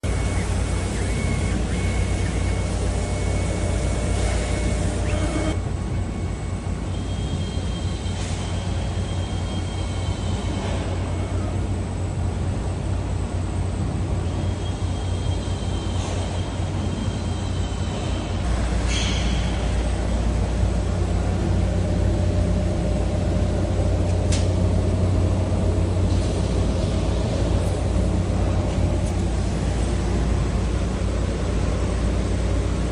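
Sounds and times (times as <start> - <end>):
high motor whine: 0.0 - 12.2
machine low hum: 0.0 - 32.9.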